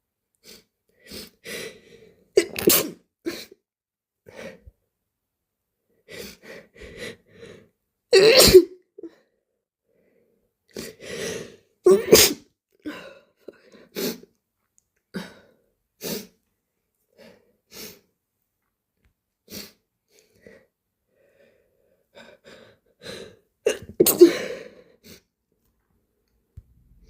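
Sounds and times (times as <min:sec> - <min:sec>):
person sneezing: 0:02.4 - 0:03.5, 0:08.2 - 0:08.8, 0:11.9 - 0:12.4, 0:23.7 - 0:24.6.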